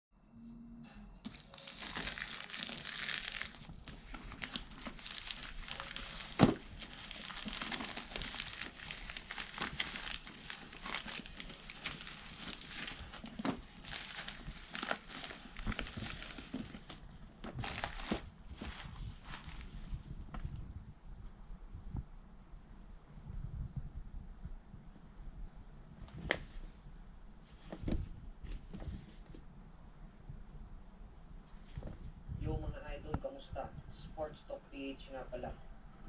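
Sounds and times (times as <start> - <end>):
packaging crinkling and rustling: 1.2 - 20.6.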